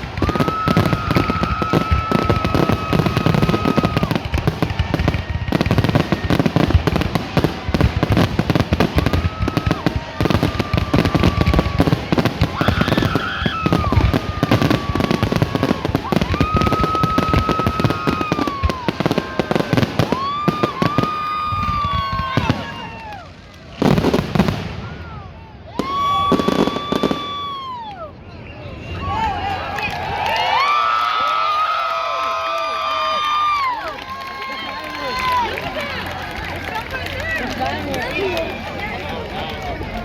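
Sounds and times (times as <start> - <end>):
fireworks crackling and popping: 0.0 - 27.8, 31.6 - 40.0
fireworks whistling: 0.0 - 27.9.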